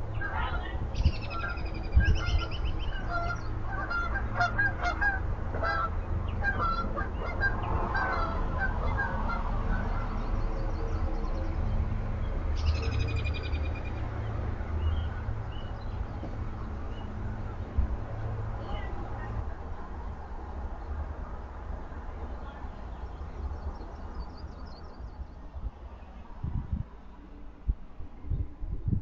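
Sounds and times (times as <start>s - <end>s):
birds calling: 0.0s - 17.6s.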